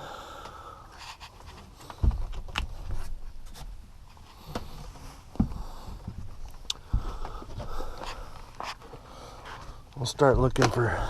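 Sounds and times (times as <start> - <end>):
heavy thumps: 1.9 - 3.7, 4.4 - 8.7.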